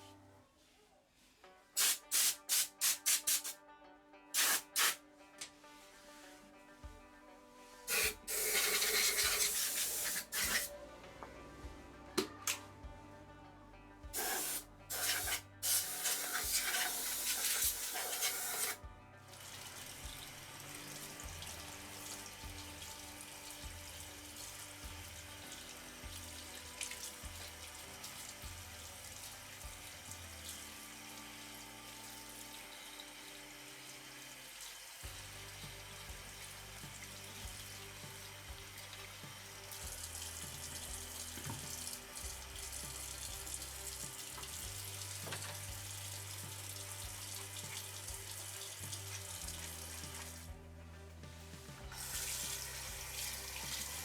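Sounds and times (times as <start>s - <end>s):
tap water running into sink: 7.9s - 10.7s, 14.2s - 50.5s, 51.9s - 54.0s.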